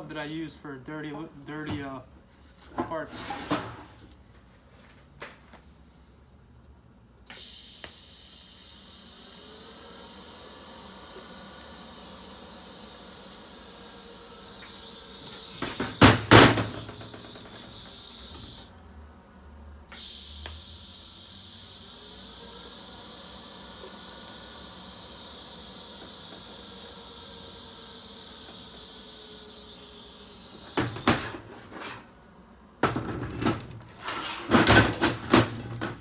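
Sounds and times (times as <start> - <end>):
welding arc hissing: 7.3 - 18.7, 19.9 - 32.1.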